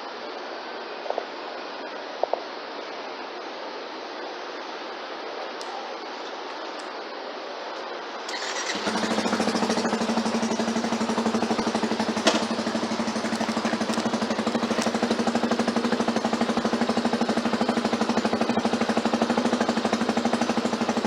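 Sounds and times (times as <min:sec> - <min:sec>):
engine starting and idling: 0:08.3 - 0:21.0.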